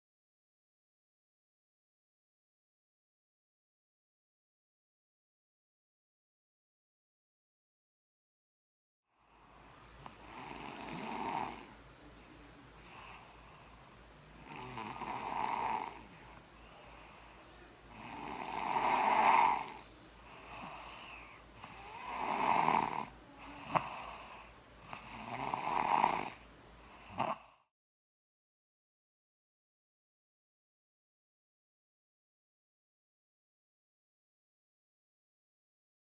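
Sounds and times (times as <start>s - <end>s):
child snoring: 9.2s - 11.8s, 12.8s - 27.7s.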